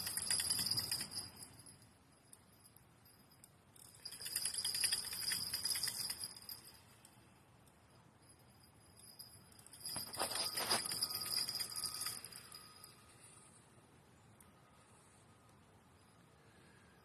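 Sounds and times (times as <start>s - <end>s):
small bell jingling: 0.0s - 13.4s.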